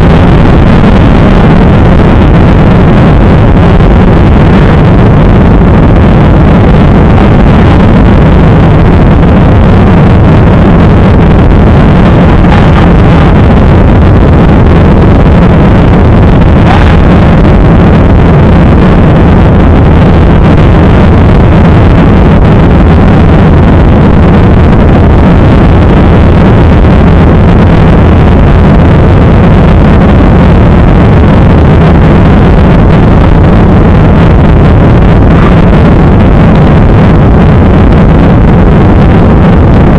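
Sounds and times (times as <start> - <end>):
airliner engines roaring: 0.0 - 25.6.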